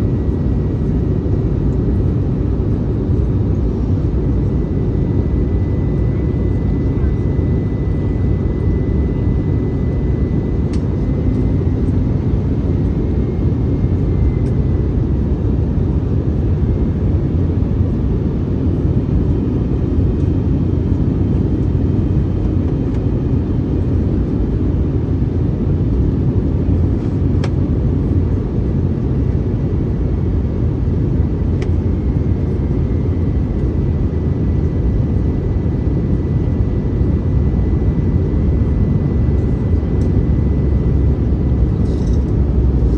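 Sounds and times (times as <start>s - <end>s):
engine and airflow rumble: 0.0s - 42.9s.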